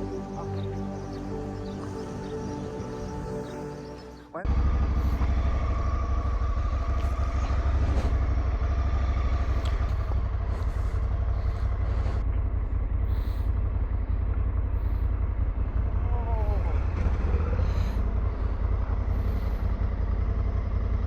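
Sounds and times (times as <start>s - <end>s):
motorcycle engine running: 4.4s - 21.0s.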